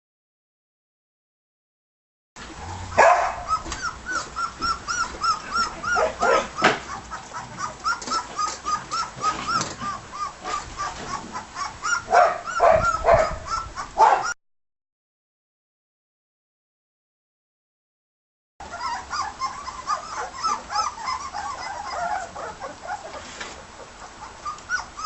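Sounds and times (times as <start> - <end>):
puppies yelping: 2.6 - 14.4, 18.6 - 25.0
puppies squeaking and whimpering: 2.8 - 14.4, 18.6 - 25.0.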